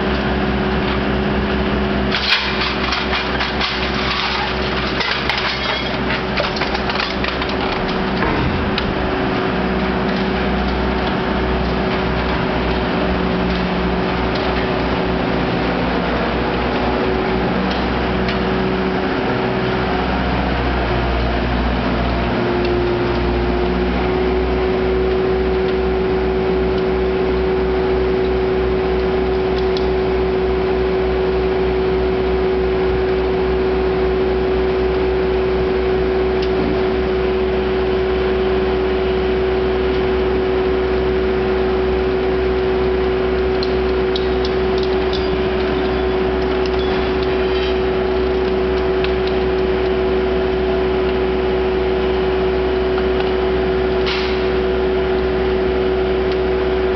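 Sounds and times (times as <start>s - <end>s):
hydraulic power unit whining: 0.8s - 19.7s, 35.9s - 56.9s.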